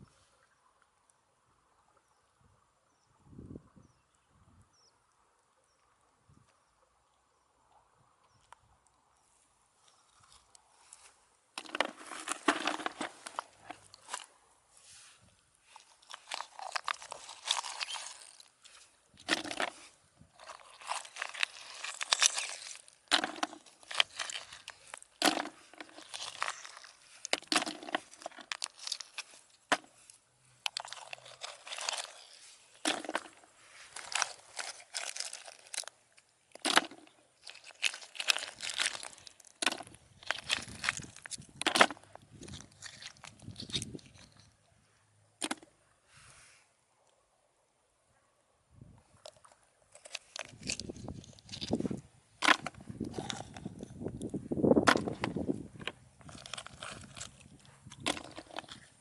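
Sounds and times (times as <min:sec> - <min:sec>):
crunching and rustling: 0:09.8 - 0:44.8, 0:45.4 - 0:45.8, 0:49.0 - 0:59.0.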